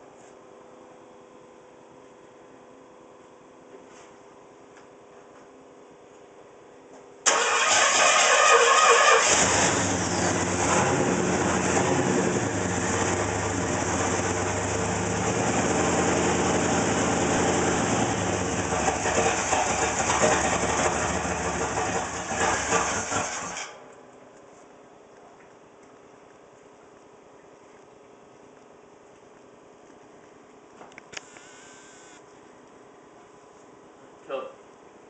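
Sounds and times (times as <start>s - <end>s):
engine starter cranking: 7.3s - 11.0s
engine idling roughly: 7.3s - 23.8s.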